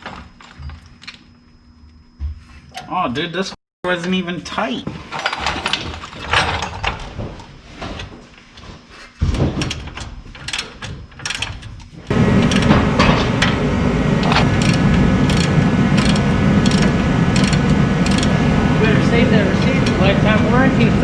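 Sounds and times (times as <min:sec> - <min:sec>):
metal tools clanking: 0:09.6 - 0:20.7
loud machine drone: 0:12.1 - 0:21.0.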